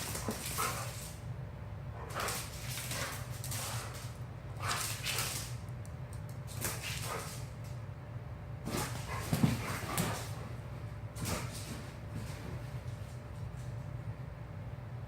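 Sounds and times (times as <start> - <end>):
dogs huffing and scuffling: 0.0 - 1.2, 2.0 - 5.6, 6.5 - 7.7, 8.7 - 13.5
steady low hum: 0.0 - 15.0.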